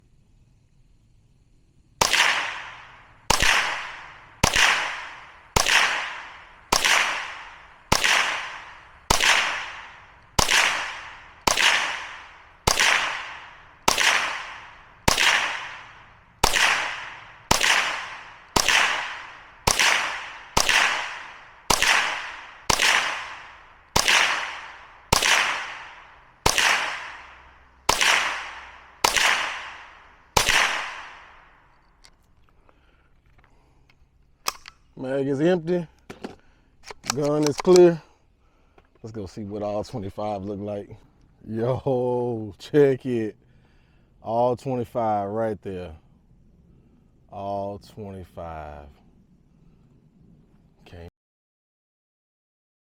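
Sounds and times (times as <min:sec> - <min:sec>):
rifle shots with ringing decay: 0:02.0 - 0:31.9.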